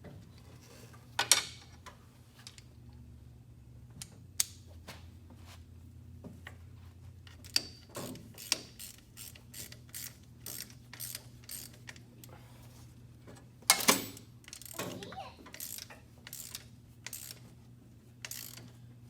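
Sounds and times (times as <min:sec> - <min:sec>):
ratchet wrench clicking: 0:07.3 - 0:12.0, 0:14.5 - 0:14.8, 0:15.5 - 0:17.4, 0:18.2 - 0:18.7.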